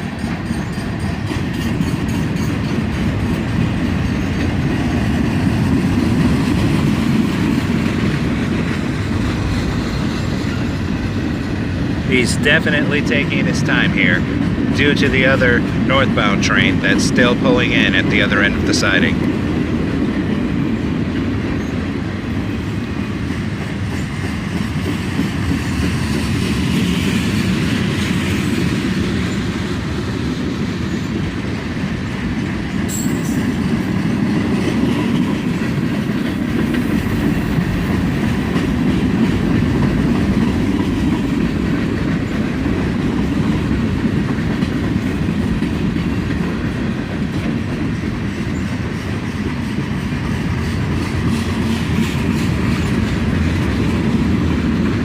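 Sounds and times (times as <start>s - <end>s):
wheels clicking over rail joints: 0.0s - 12.1s
freight train rolling rumble: 0.0s - 55.0s.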